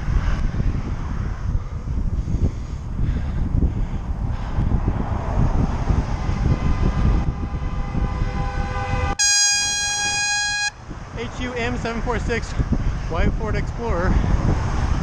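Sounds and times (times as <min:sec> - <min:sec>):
wind on microphone: 0:00.0 - 0:15.0
car horn long blast: 0:06.3 - 0:10.8.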